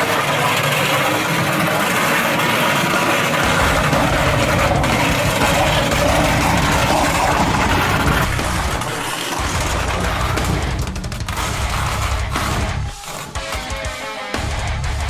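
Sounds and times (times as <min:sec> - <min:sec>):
car engine running: 0:00.0 - 0:15.0
low rumble: 0:03.4 - 0:12.9.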